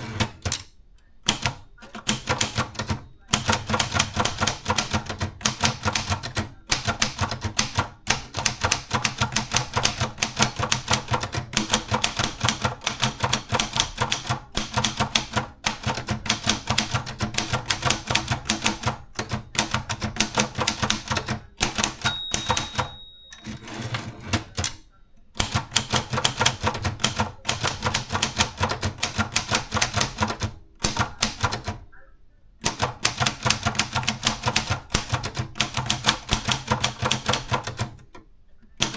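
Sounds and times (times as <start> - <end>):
typewriter key clacks: 1.3 - 24.8, 32.6 - 38.0
typewriter bell ringing: 21.7 - 24.6.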